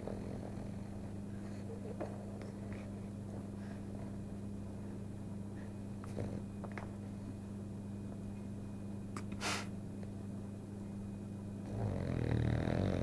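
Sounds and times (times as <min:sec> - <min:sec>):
dog snorting: 0:00.0 - 0:03.5, 0:06.0 - 0:06.5, 0:11.6 - 0:13.0
dog snoring: 0:00.0 - 0:03.8, 0:06.0 - 0:06.7, 0:11.6 - 0:13.0.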